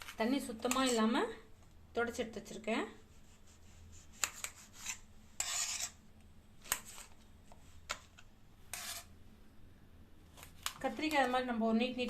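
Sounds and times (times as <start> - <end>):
knife slicing eggplant: 3.9 - 6.0.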